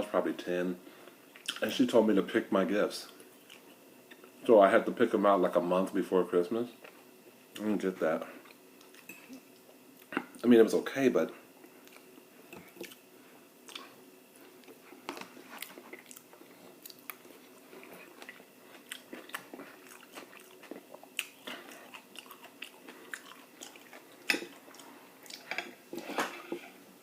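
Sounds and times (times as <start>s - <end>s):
person chewing food: 11.6s - 26.7s.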